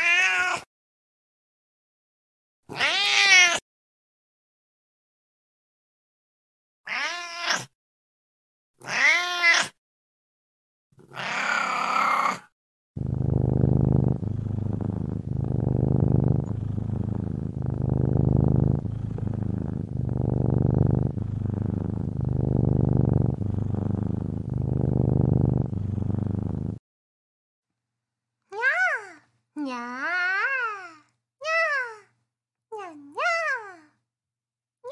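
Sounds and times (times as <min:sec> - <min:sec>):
cat meowing: 0:00.0 - 0:00.7, 0:02.7 - 0:03.6, 0:06.9 - 0:07.7, 0:08.8 - 0:09.8, 0:11.0 - 0:12.4
cat purring: 0:13.0 - 0:26.8.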